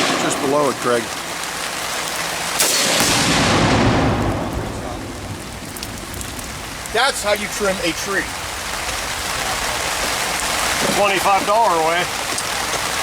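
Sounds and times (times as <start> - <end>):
rifle shot crack: 0.0 - 0.8, 2.6 - 6.1
rain hissing: 0.0 - 13.0
deep explosion boom: 2.6 - 10.2.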